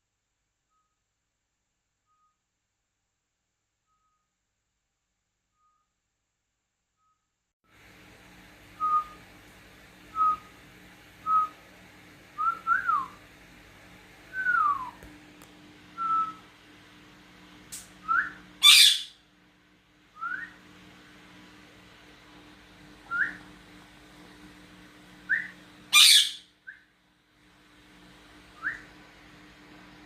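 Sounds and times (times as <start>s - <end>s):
parrots whistling: 18.0s - 19.2s, 25.3s - 26.8s
parrot screech: 18.6s - 19.1s, 25.9s - 26.5s.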